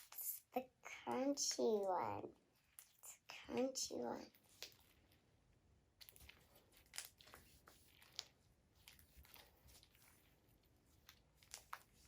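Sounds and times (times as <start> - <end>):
crunchy slime crackling and popping: 5.9 - 10.2, 11.0 - 12.0.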